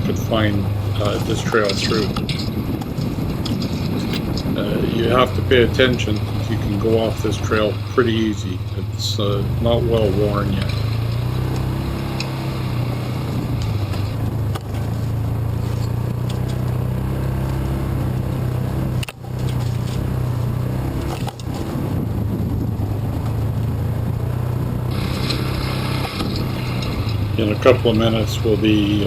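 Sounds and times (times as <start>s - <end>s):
utility vehicle engine running: 0.0s - 29.0s.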